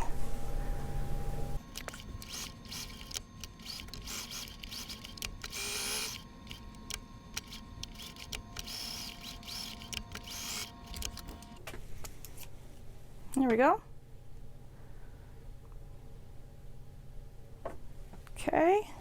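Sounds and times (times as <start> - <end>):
sewing machine motor whine: 1.6 - 11.6.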